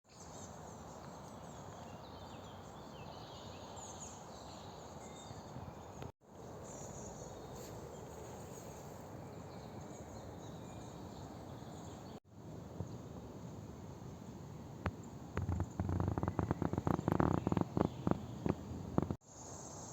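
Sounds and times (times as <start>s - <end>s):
songbirds chirping and trilling: 0.2s - 12.2s, 14.9s - 19.9s.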